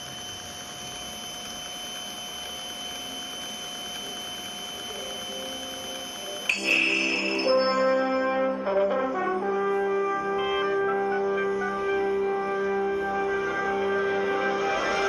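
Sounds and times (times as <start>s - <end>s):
faint high whining tones: 0.0s - 15.0s
tape playback hiss: 0.8s - 15.0s
music: 6.4s - 15.0s.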